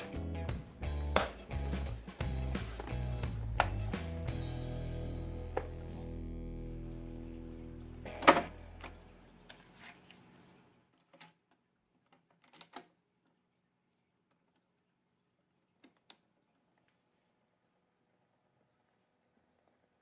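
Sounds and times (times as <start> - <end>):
music: 0.0 - 9.2.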